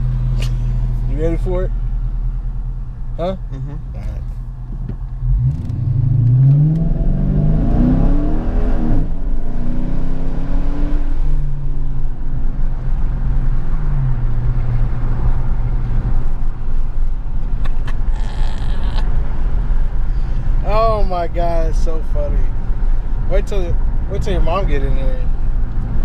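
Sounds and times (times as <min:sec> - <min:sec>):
car engine accelerating hard: 0:05.1 - 0:11.7.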